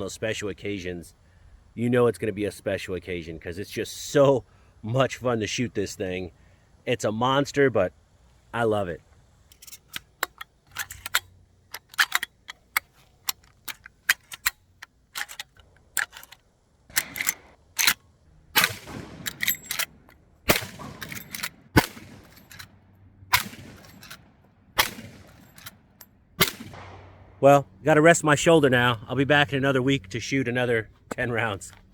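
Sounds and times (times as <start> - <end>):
rifle lever clicking and clacking: 9.2 - 22.7, 23.3 - 26.8
rifle shots echoing: 18.5 - 22.6, 23.3 - 25.7, 26.4 - 27.4.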